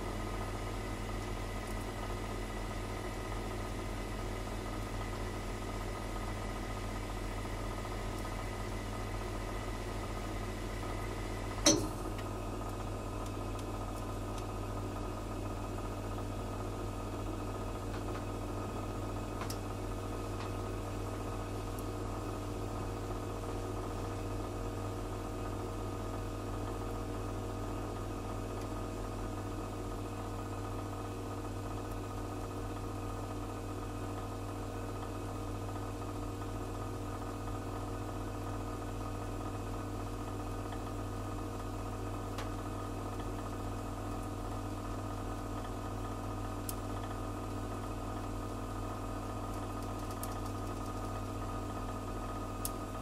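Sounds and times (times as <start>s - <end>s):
gas flames hissing: 0.0s - 15.0s
gas heater humming: 0.0s - 53.0s.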